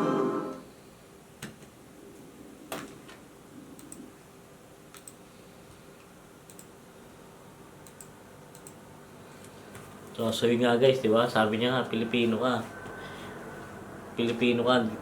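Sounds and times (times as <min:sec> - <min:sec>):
computer keyboard and mouse clicks: 0:03.8 - 0:04.1, 0:04.9 - 0:05.2, 0:06.4 - 0:06.8, 0:07.8 - 0:08.8.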